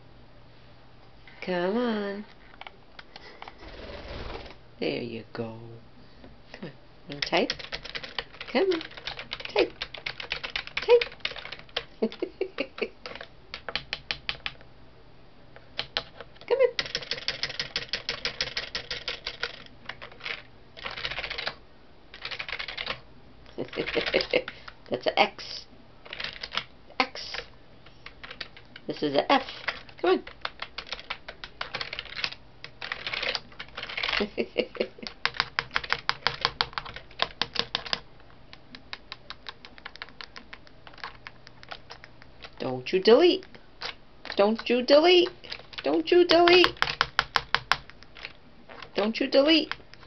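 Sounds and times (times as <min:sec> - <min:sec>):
keyboard keys clicking: 0:07.2 - 0:14.6, 0:15.8 - 0:21.6, 0:22.2 - 0:23.0, 0:28.0 - 0:28.8, 0:29.6 - 0:34.3, 0:34.9 - 0:42.6, 0:44.3 - 0:48.9.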